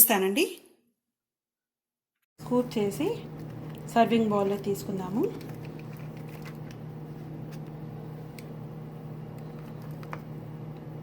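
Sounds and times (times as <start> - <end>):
low electrical hum: 2.4 - 11.0.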